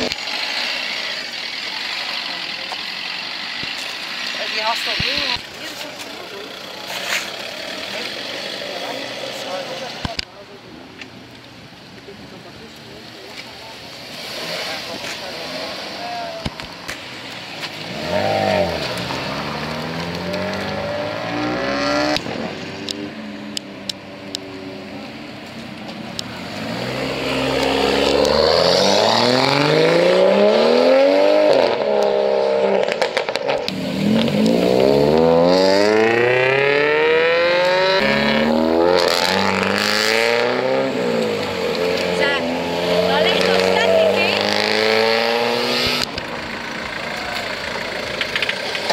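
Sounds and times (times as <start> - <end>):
car engines accelerating hard: 0.0 - 10.2, 12.3 - 48.9
exhaust cracks: 31.6 - 48.9.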